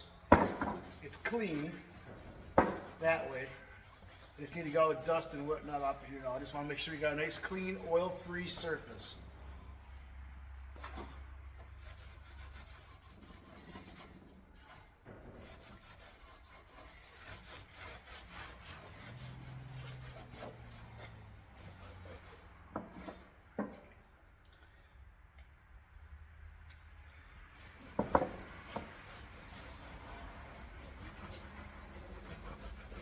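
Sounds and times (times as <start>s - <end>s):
sharp knocks: 0.3s - 0.9s, 2.1s - 3.0s
rag wiping metal panel: 0.4s - 9.1s, 27.8s - 33.0s.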